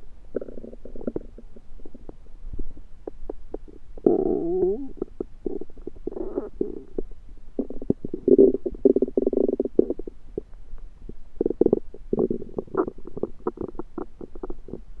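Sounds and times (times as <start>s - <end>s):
stomach gurgling and rumbling: 0.3s - 15.0s.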